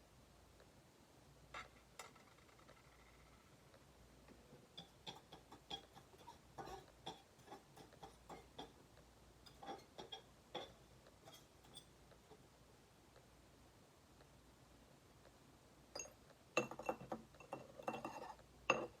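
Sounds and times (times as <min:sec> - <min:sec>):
small tools clicking and tapping: 0:04.8 - 0:12.4.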